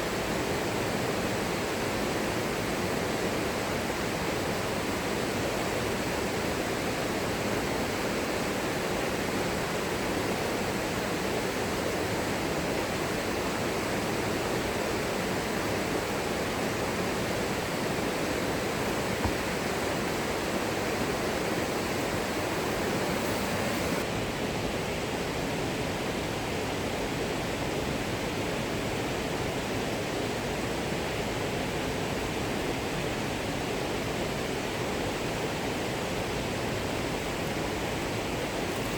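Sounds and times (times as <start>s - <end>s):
waterfall rushing: 14.3s - 24.0s.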